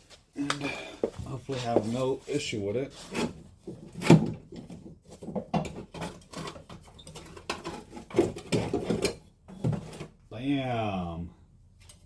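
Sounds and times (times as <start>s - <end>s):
metal knocks clunks and rattles: 3.6s - 10.0s.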